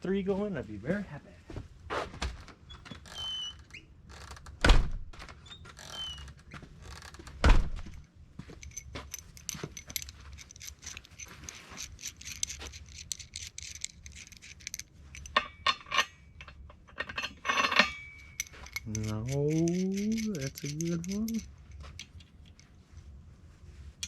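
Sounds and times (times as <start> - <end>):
short high creaks: 2.7 - 4.6, 5.4 - 7.4
metal bolts clinking and rattling: 5.2 - 23.1
metal parts clicking: 5.7 - 22.8.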